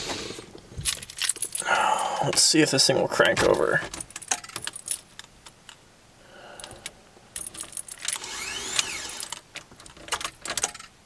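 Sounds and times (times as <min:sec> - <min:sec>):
keys jangling and clicking: 0:00.8 - 0:01.8, 0:03.8 - 0:05.3, 0:06.6 - 0:08.2.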